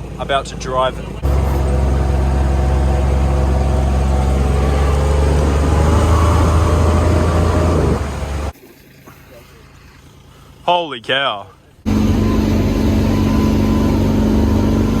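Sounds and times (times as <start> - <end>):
vehicle engine droning: 0.2 - 8.5, 11.9 - 15.0.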